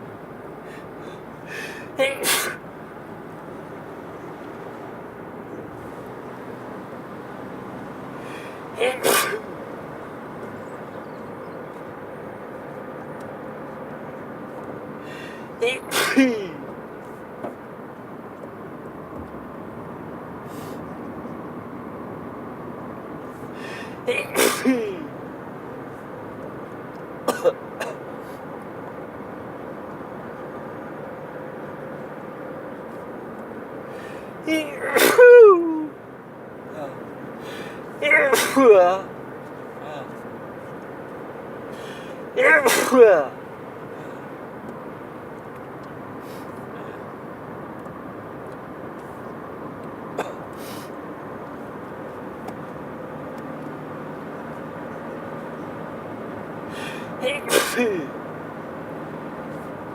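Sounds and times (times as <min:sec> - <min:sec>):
car cabin road noise: 0:00.0 - 0:59.9
person sneezing: 0:01.5 - 0:02.6, 0:08.8 - 0:09.5, 0:15.6 - 0:16.6, 0:23.6 - 0:25.1, 0:34.5 - 0:35.9, 0:36.8 - 0:39.0, 0:41.8 - 0:43.3, 0:56.8 - 0:58.2.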